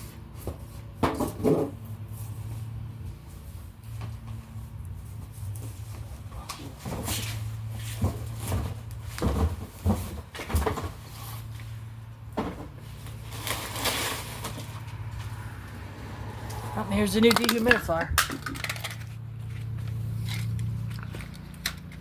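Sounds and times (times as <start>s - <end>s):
boxes and packaging being handled: 3.9s - 15.4s, 17.0s - 22.0s.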